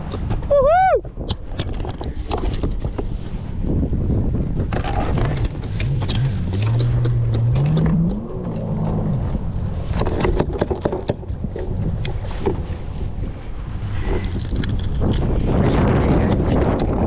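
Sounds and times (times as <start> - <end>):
wind buffeting microphone: 0.0 - 17.0
low hum rising in pitch: 5.7 - 10.2.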